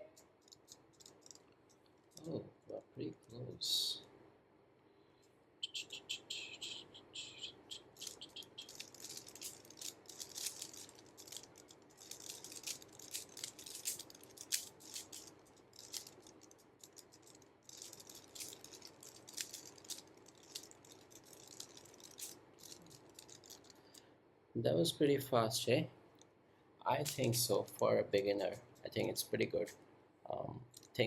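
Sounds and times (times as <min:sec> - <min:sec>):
puzzle cube clicking and rattling: 0:00.0 - 0:02.3, 0:06.4 - 0:24.0.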